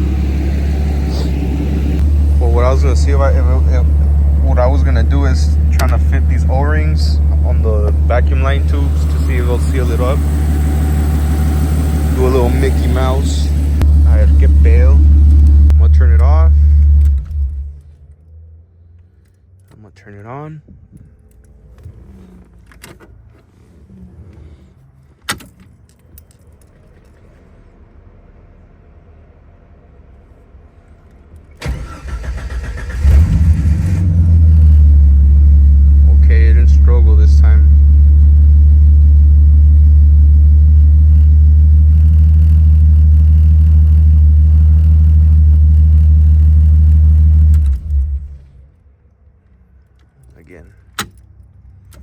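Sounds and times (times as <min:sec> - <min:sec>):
steady low hum: 0:00.0 - 0:19.6, 0:28.2 - 0:50.8
car engine idling: 0:00.0 - 0:19.8, 0:25.9 - 0:52.0
clicks: 0:01.0 - 0:06.6
keys jangling: 0:25.1 - 0:27.5.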